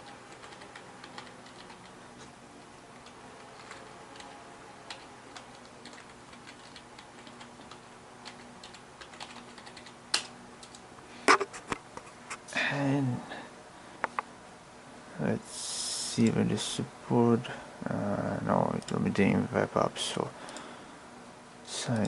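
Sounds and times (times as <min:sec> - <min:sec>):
faint steady hum: 0:00.0 - 0:22.0
typing on computer keyboard: 0:00.3 - 0:01.9, 0:03.0 - 0:10.8.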